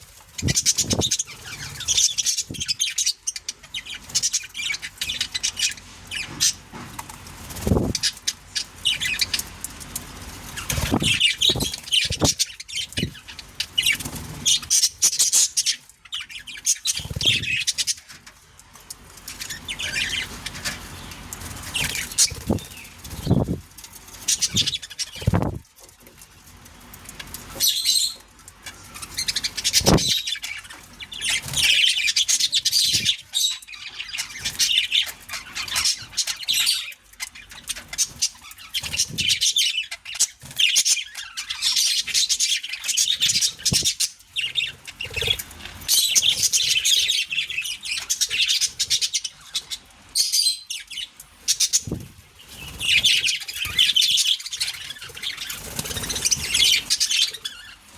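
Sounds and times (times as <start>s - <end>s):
budgerigars chirping and chattering: 0.0s - 26.1s, 26.8s - 57.9s
wing flaps: 7.5s - 8.1s, 10.6s - 12.4s, 25.2s - 25.6s, 29.8s - 30.1s.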